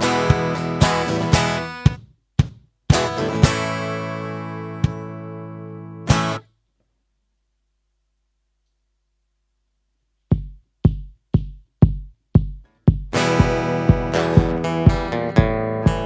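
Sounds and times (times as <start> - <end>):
stomp box percussion hits: 0.0 - 3.8, 4.8 - 5.2, 10.3 - 16.0
acoustic guitar strumming: 0.0 - 6.5, 12.7 - 16.0.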